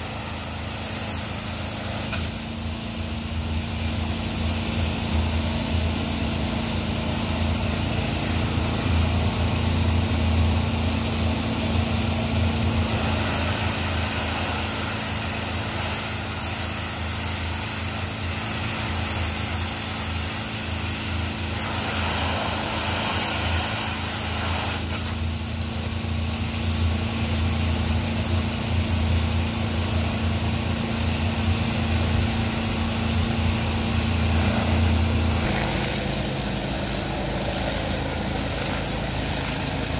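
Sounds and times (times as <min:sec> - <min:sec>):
high-pressure water spray hiss: 0:00.0 - 0:39.9
pressure washer engine running: 0:00.0 - 0:39.9.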